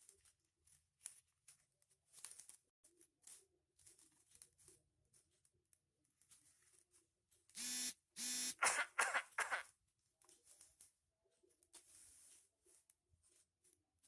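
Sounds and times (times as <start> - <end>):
foil paper crinkling: 0.0 - 7.5
short steady tones: 7.6 - 8.6.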